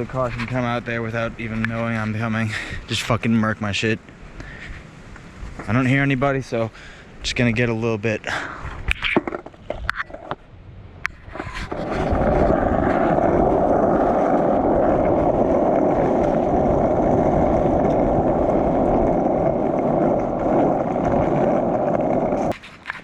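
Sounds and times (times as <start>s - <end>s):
skateboard wheels rolling on asphalt: 0.0s - 23.0s.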